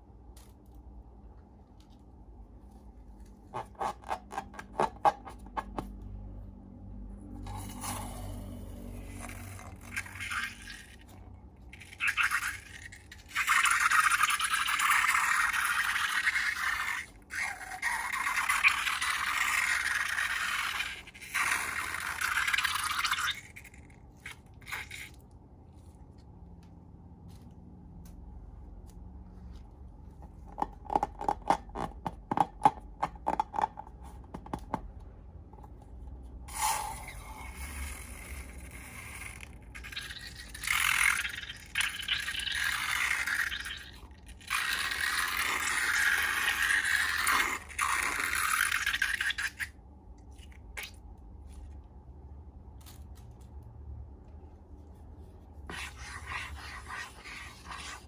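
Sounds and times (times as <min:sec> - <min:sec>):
slime scraping and rustling: 0:54.3 - 0:58.0.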